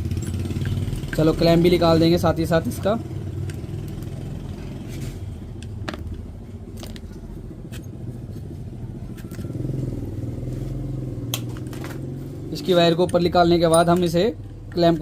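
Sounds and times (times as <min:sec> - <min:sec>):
tools clicking and tapping: 0:00.1 - 0:01.8, 0:03.2 - 0:04.2, 0:12.6 - 0:15.0.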